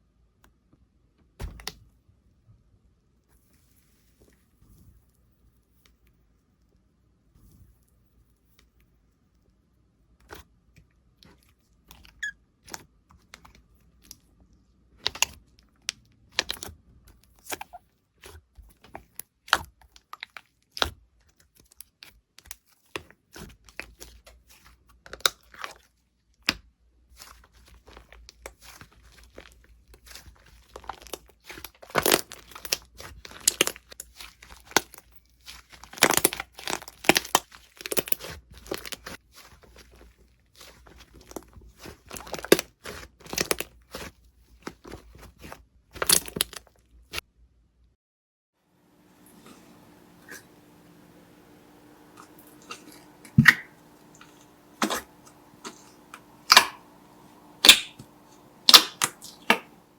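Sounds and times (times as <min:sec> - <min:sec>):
slime squeezed with crackling pops: 0:51.8 - 0:59.8.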